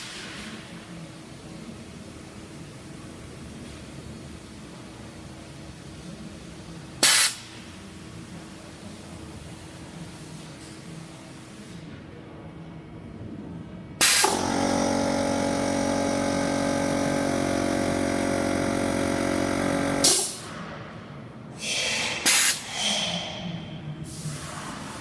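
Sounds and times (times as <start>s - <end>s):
air hissing: 7.0s - 7.5s, 21.6s - 25.0s
welding machine electrical hum: 14.0s - 20.6s.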